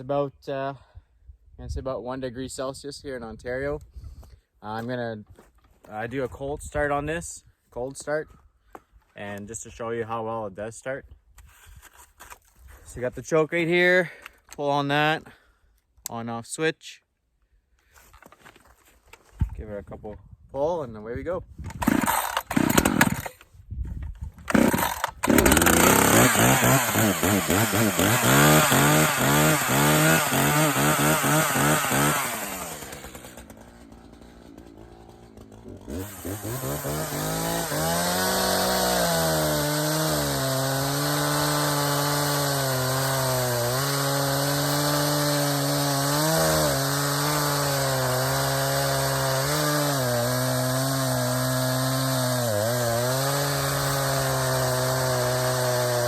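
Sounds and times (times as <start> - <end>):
chainsaw cutting wood: 21.6 - 23.4, 24.4 - 56.0.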